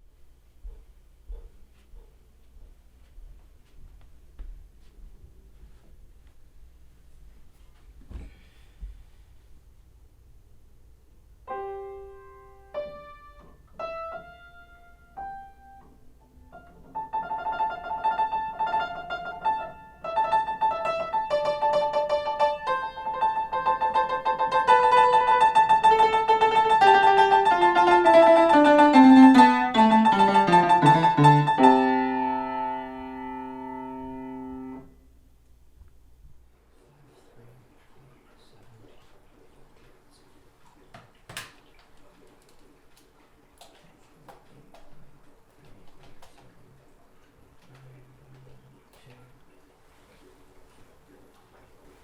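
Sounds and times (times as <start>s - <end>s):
piano music: 11.4s - 35.0s.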